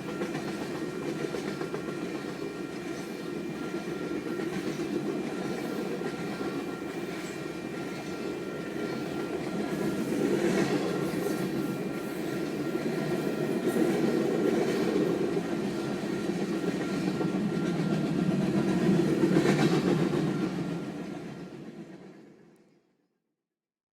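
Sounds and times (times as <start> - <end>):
train clanks: 0.0 - 22.4
train rumbling on rails: 0.0 - 22.5.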